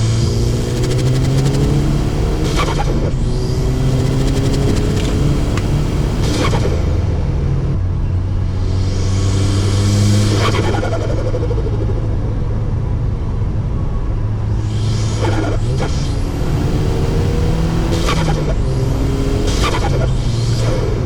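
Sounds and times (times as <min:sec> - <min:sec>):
car engine accelerating hard: 0:00.0 - 0:21.0
turbo flutter: 0:14.5 - 0:21.0
turbo hissing: 0:14.5 - 0:21.0.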